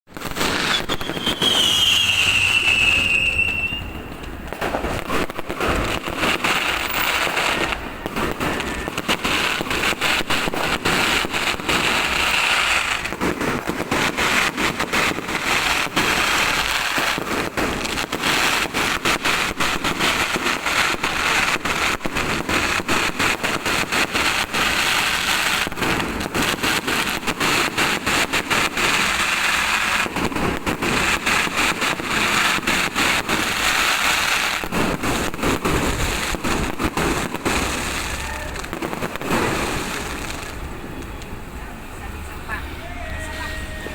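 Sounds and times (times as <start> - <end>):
fireworks bangs and crackles: 0.1 - 43.9
falling whistle: 0.6 - 4.1.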